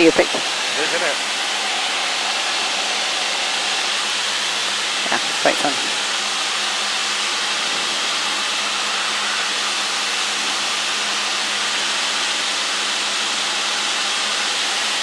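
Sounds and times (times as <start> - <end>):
aircraft engine and propeller drone: 0.0 - 15.0
rush of air: 0.4 - 11.6.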